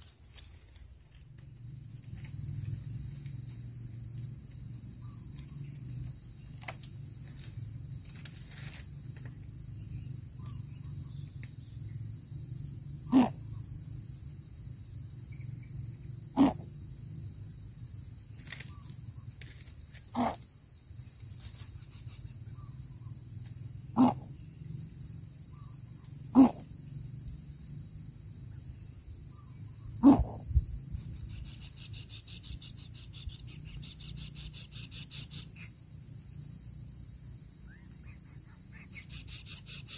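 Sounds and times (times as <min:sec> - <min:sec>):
cricket trill: 0:00.0 - 0:39.9.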